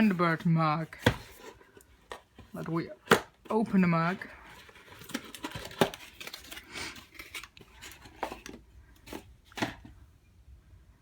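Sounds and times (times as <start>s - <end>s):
cardboard and wrapping rustling: 0.0s - 10.1s.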